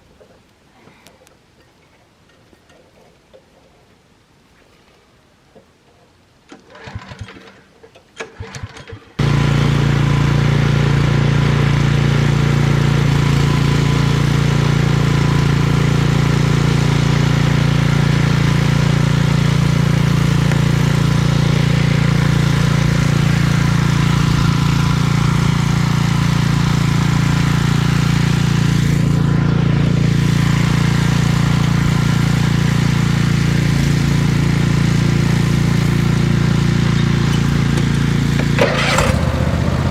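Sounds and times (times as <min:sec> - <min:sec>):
engine running: 0:08.4 - 0:39.9.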